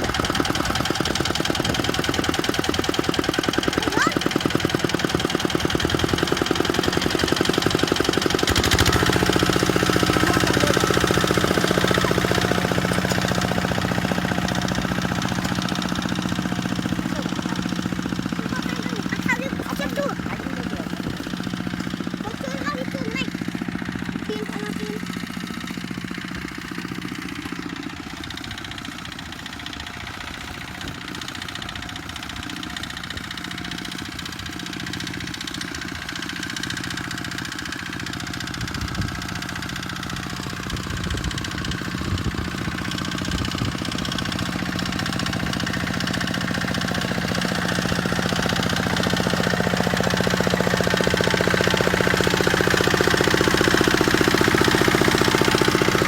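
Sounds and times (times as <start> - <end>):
engine knocks: 0.0 - 56.0
tractor engine running: 0.0 - 56.0.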